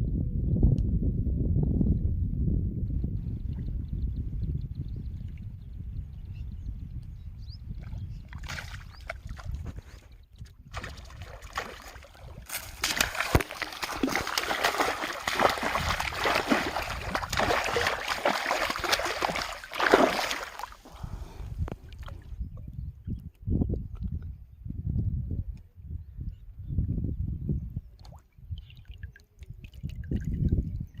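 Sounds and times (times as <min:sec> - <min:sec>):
river water splashing: 0:10.7 - 0:21.1.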